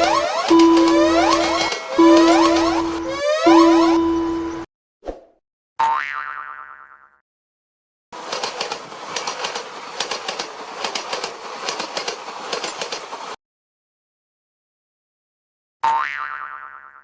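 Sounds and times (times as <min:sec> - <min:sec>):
train wheel clacks: 0:08.2 - 0:13.4.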